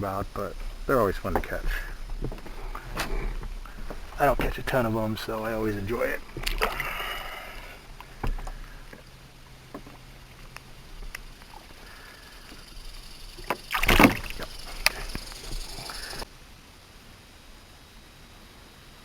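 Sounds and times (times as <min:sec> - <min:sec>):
light clicks and knocks: 0:00.2 - 0:12.7.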